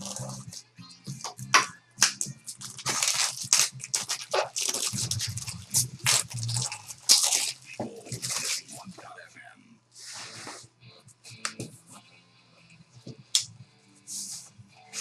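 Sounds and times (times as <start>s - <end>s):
plastic wrapper crinkling: 2.5s - 8.7s.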